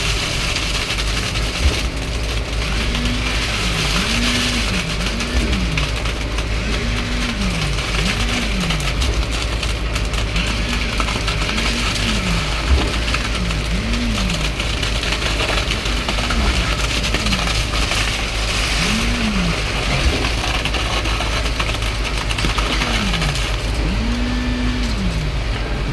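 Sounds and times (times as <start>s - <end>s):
diesel pump rumble: 0.0s - 25.9s.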